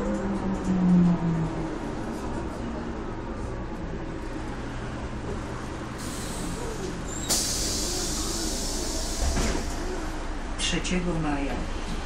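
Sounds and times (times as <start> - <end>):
diesel bus idling: 0.0 - 12.0
compressed air hissing: 7.2 - 9.8.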